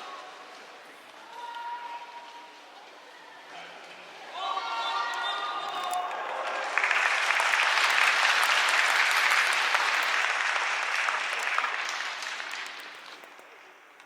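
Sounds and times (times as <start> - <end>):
crowd applauding: 5.8 - 14.0.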